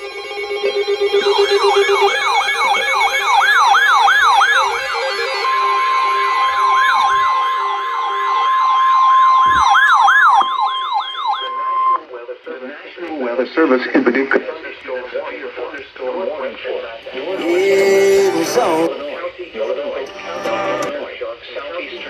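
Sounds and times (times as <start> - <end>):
steady long alarm tone: 0.0 - 12.0
wailing siren sweep: 0.0 - 12.0.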